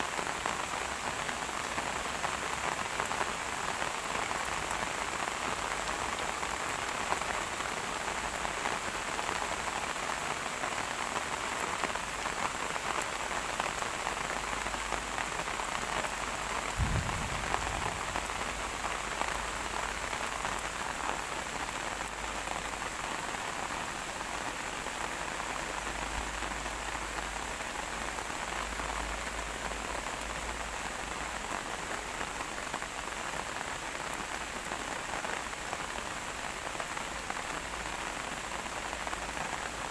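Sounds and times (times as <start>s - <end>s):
steady rain falling: 0.0s - 39.9s
low thump: 16.8s - 18.6s.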